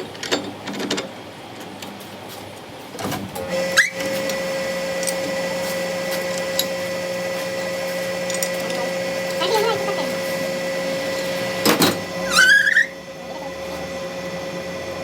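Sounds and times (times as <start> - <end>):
electric machine whining and humming: 3.4 - 15.0.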